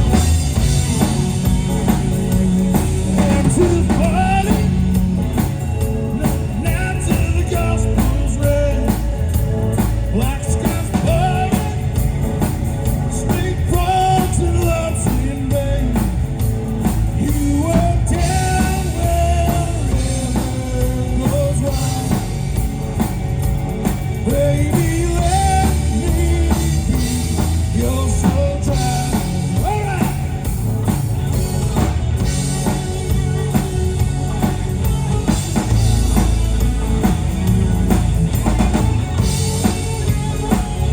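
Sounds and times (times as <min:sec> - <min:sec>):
rock band playing: 0:00.0 - 0:40.9
person singing: 0:02.7 - 0:09.1, 0:10.1 - 0:12.1, 0:17.1 - 0:22.7, 0:24.2 - 0:30.7.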